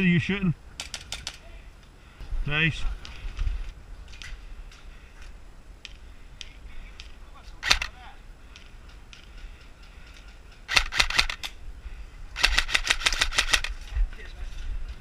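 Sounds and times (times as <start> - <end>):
airsoft guns firing: 10.7 - 11.5, 12.4 - 13.8.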